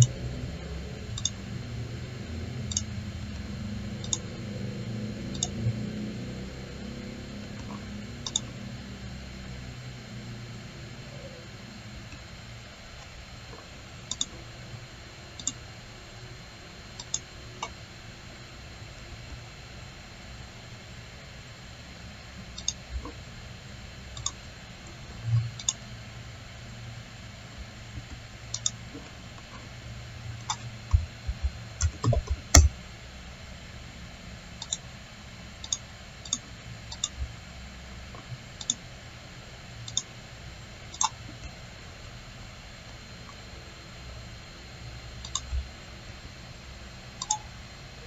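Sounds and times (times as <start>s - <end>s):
steady low hum: 0.0s - 48.0s
computer mouse clicking: 1.2s - 1.4s, 2.6s - 2.9s, 4.0s - 4.3s, 5.3s - 5.6s, 7.6s - 8.5s, 14.1s - 14.3s, 15.4s - 15.6s, 17.0s - 17.7s, 22.5s - 23.2s, 24.2s - 24.4s, 25.4s - 25.8s, 28.0s - 29.0s, 30.4s - 32.8s, 34.6s - 34.9s, 35.6s - 37.3s, 38.2s - 38.8s, 39.9s - 40.1s, 40.9s - 41.6s, 45.2s - 45.7s, 47.2s - 47.4s.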